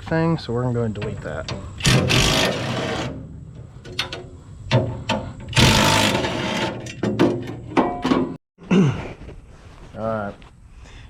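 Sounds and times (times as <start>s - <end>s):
hand tools on metal: 0.8s - 8.4s
rasping metal clatter: 1.0s - 8.4s
metallic clicks and knocks: 3.8s - 8.4s.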